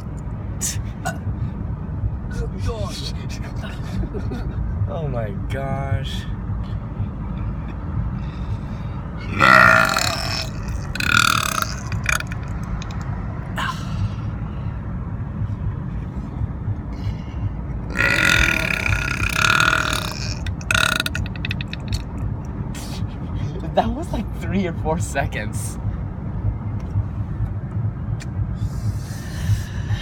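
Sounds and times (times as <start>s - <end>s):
steady low rumble: 0.0s - 30.0s
person burping loudly: 9.2s - 13.0s, 17.9s - 22.1s.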